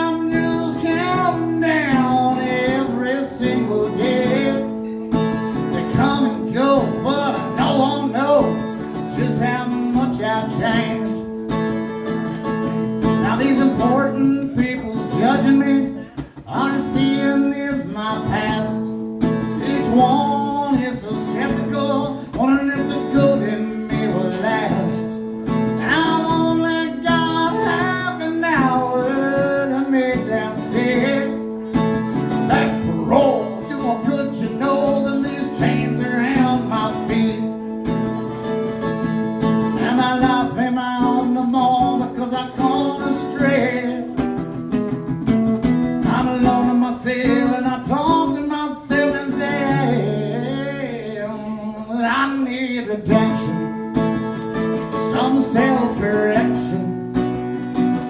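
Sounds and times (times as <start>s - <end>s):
person singing: 0.0s - 11.4s, 19.6s - 38.0s, 39.5s - 44.4s, 46.0s - 57.1s
strummed acoustic guitar: 0.0s - 58.0s.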